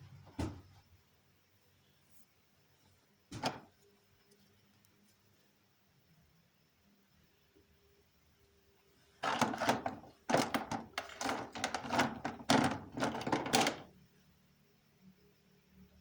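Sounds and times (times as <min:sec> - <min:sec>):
objects knocking and clattering: 0:03.3 - 0:03.7, 0:09.2 - 0:13.9.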